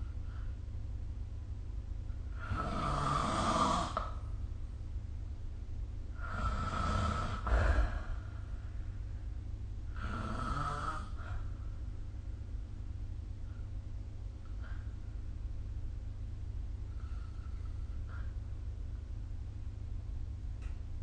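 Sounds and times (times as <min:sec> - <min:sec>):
steady low hum: 0:00.0 - 0:21.0
person snoring: 0:02.4 - 0:04.1, 0:06.2 - 0:08.2, 0:09.9 - 0:11.5.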